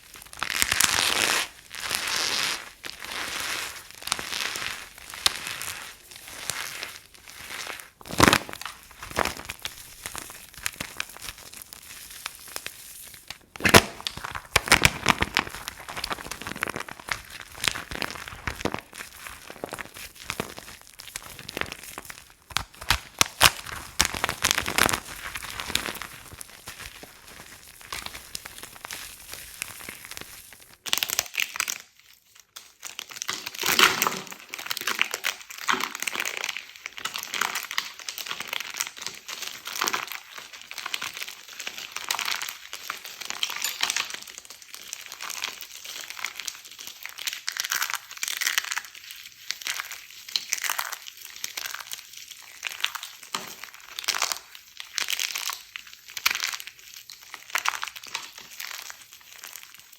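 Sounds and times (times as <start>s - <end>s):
soap crunching and crackling: 0.0s - 59.9s.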